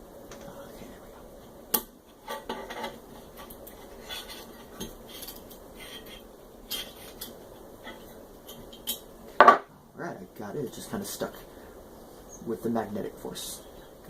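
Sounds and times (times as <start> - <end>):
metal tool scraping metal: 2.2 - 8.0.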